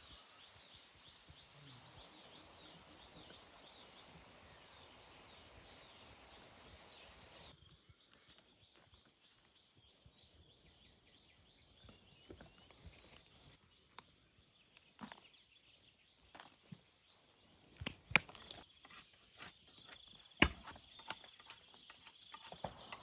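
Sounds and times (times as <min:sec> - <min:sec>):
bird chirps: 0:17.9 - 0:23.0.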